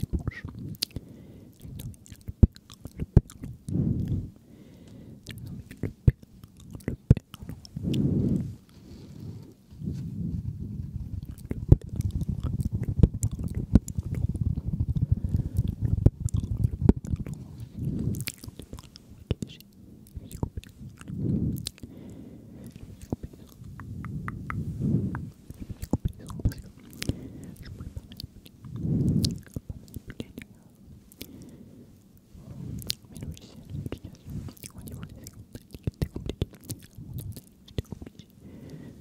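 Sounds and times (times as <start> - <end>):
wet mouth clicks and smacks: 0.0 - 1.0, 1.6 - 4.3, 5.2 - 8.5, 11.2 - 21.9, 22.6 - 31.4, 32.8 - 38.3
soft low swells: 7.4 - 35.2.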